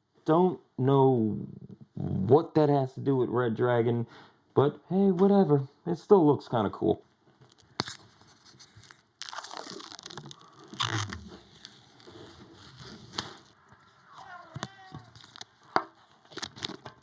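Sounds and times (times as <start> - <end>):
packaging rustling and crackling: 7.4 - 17.0.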